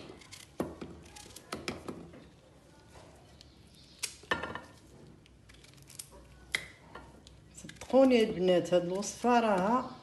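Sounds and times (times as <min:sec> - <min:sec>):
knife cutting vegetable: 0:00.0 - 0:02.0.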